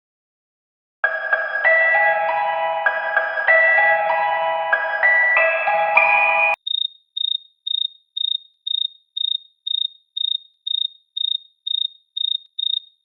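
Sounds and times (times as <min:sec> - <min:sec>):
chiming musical chord: 0:01.0 - 0:06.6
electronic alarm beeping: 0:02.4 - 0:13.0.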